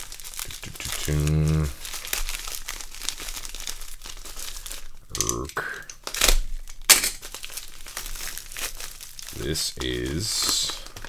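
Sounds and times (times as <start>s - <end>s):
packaging crinkling and tearing: 0.0s - 11.0s.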